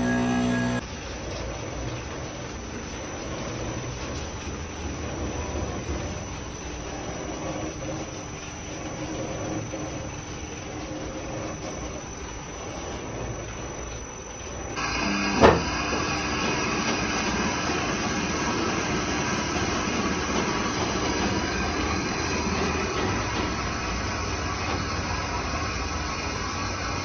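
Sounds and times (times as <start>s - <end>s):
workshop machinery noise: 0.0s - 27.0s
loud metallic clank: 15.4s - 16.0s.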